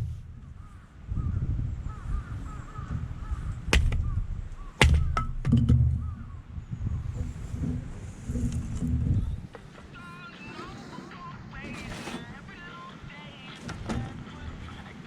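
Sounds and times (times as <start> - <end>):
bird calling: 0.0 - 8.3, 9.1 - 15.0
sharp knocks: 3.7 - 6.3.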